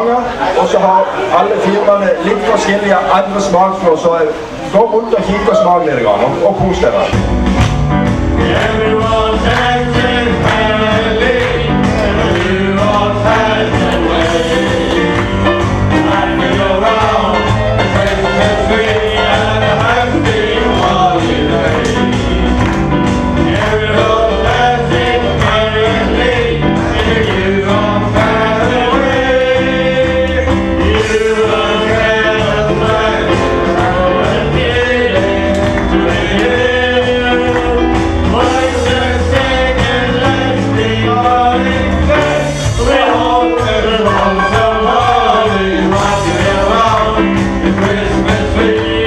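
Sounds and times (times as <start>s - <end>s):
live country band playing: 6.2s - 49.0s
person singing: 23.4s - 49.0s.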